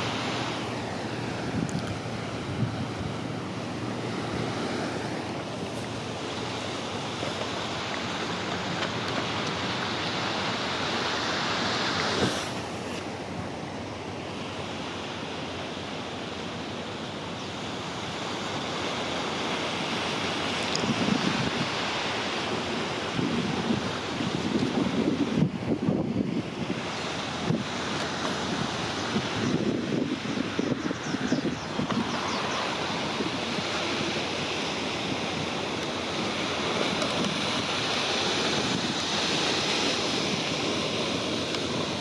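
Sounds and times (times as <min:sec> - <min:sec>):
wind buffeting microphone: 0:00.0 - 0:07.4, 0:23.0 - 0:42.0
sea water: 0:00.0 - 0:42.0.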